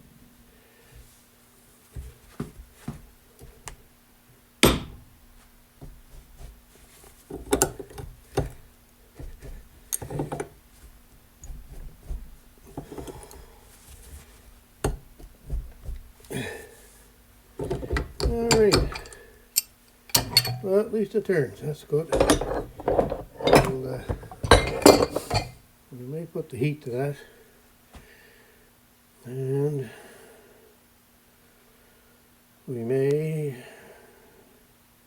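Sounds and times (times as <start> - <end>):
faint steady hum: 0.0 - 35.0
wrenches clanking on metal: 17.6 - 25.6.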